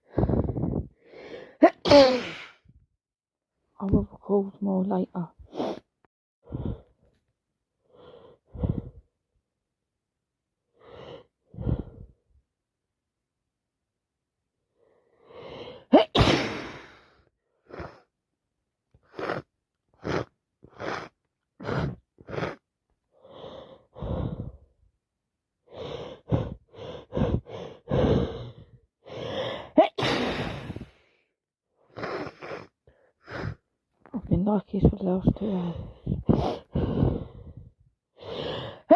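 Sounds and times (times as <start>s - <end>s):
woman sneezing: 1.6s - 2.6s, 15.9s - 16.9s, 29.7s - 30.8s
short sharp gasping breaths: 25.7s - 33.7s, 35.4s - 38.9s.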